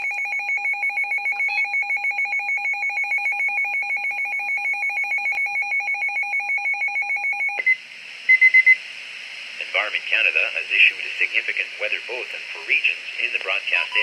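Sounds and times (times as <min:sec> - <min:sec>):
rapid electronic trilling alarm: 0:00.0 - 0:07.7.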